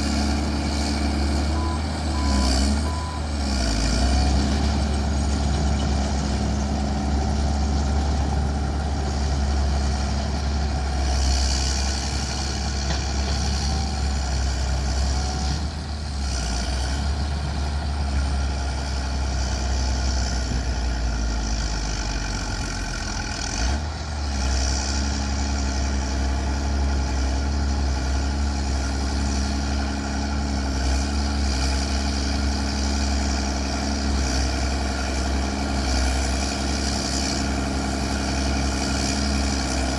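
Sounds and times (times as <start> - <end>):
bulldozer diesel engine running: 0.0 - 39.9.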